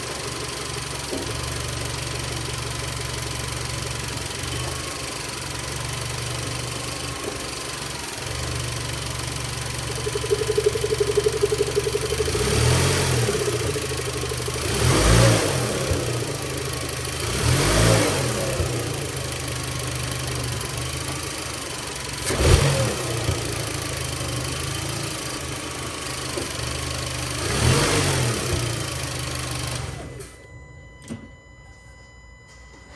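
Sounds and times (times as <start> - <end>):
car engine idling and revving: 0.0 - 30.4.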